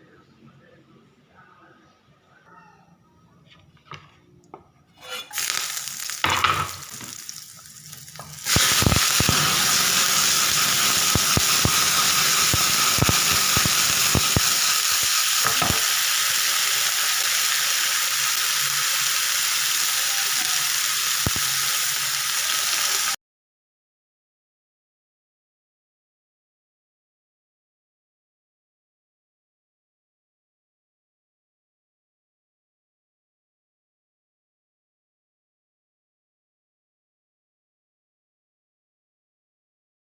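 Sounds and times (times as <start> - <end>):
food sizzling in hot oil: 5.0 - 23.2.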